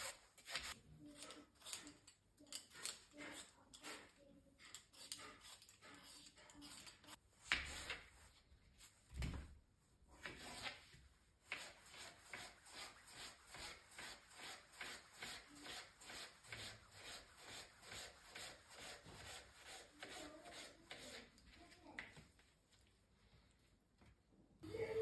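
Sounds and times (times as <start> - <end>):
faint rhythmic rubbing strokes: 0.0 - 9.1, 9.8 - 21.9.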